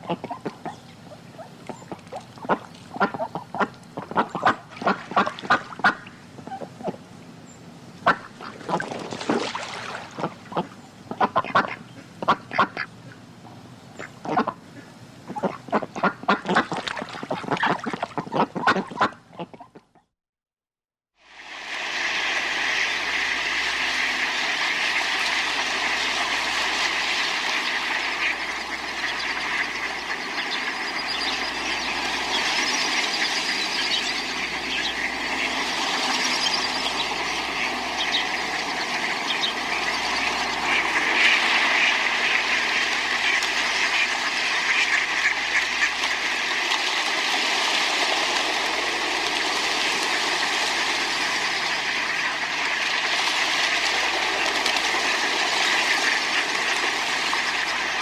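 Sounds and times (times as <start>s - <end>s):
ducks quacking: 0.0s - 7.0s, 8.0s - 9.4s, 10.2s - 13.2s, 14.0s - 19.8s, 22.6s - 46.8s
splashing in water: 8.4s - 10.8s, 16.3s - 19.0s
steady hiss: 21.3s - 46.6s.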